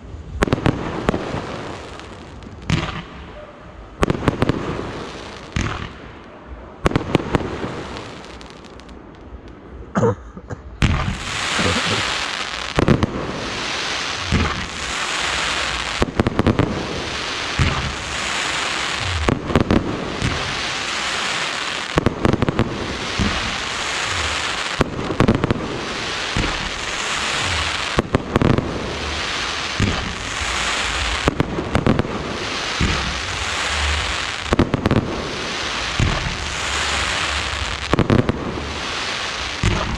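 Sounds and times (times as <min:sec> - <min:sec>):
hiss of fireworks effects: 0:00.0 - 0:03.3, 0:04.0 - 0:06.2, 0:06.9 - 0:09.0, 0:10.8 - 0:39.9
fireworks shells bursting: 0:23.1 - 0:25.5.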